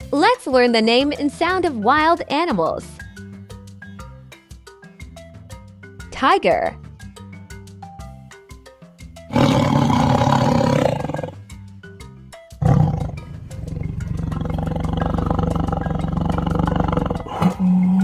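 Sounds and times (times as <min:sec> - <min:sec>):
mallet percussion music: 0:00.0 - 0:18.0
tiger roaring: 0:09.3 - 0:11.4, 0:12.6 - 0:18.0.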